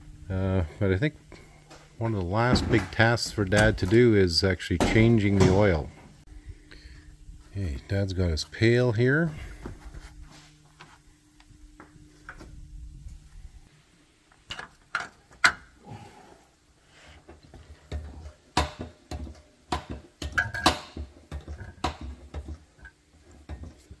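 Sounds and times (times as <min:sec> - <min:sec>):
low hum: 0:00.0 - 0:14.3.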